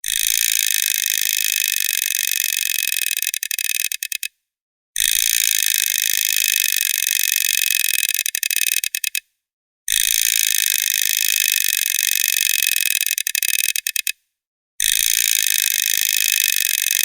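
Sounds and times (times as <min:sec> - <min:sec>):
plastic teeth chattering: 0:01.8 - 0:04.3, 0:07.1 - 0:09.2, 0:13.0 - 0:14.2.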